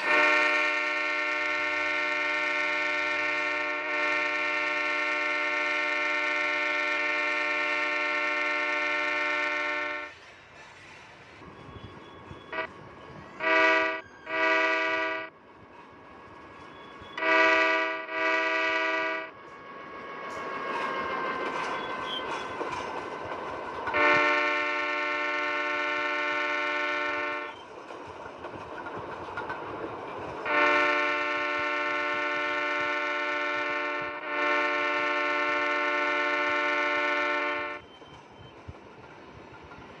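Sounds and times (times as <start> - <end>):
train horn blasts: 0.0 - 10.1, 12.5 - 12.8, 13.4 - 15.4, 17.2 - 19.4, 23.9 - 27.6, 30.4 - 37.8
train running past: 0.0 - 40.0.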